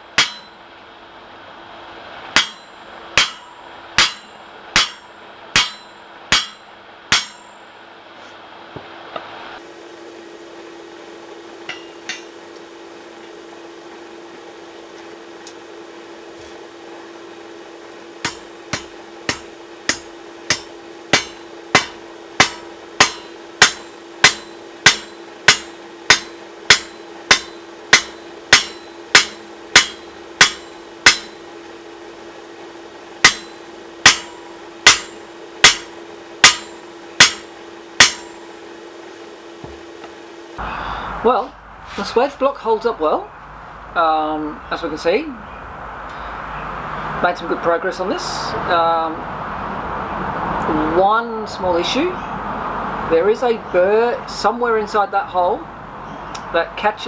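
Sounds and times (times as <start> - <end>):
hammer striking steel: 0.0 - 0.6, 2.3 - 7.6, 11.6 - 12.4, 18.2 - 31.5, 33.2 - 38.4
steady hum: 0.0 - 57.0.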